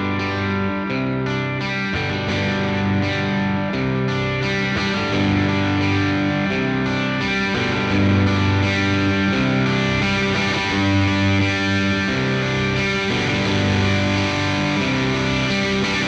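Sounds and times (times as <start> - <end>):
overdriven electric guitar chords: 0.0 - 16.0.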